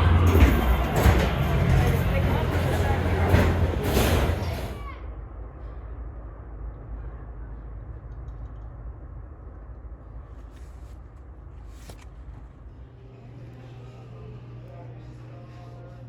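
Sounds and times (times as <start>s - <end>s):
ceiling fan air rushing: 0.0s - 16.0s
steady low hum: 0.0s - 16.0s.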